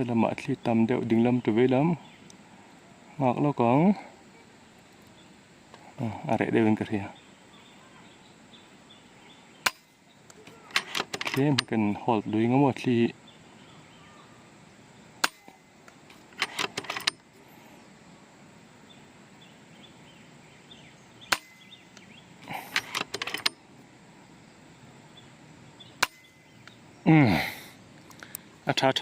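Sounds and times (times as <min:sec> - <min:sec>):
rifle action clicks: 0:09.7 - 0:11.7, 0:16.1 - 0:17.2, 0:21.3 - 0:23.6.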